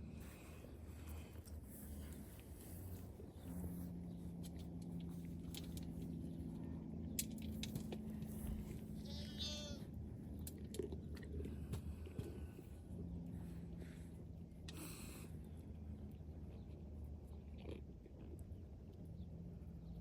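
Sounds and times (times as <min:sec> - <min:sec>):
goat chewing grain: 0:00.0 - 0:06.8, 0:07.4 - 0:19.8
steady low hum: 0:00.0 - 0:20.0
goat bleat: 0:09.0 - 0:09.9.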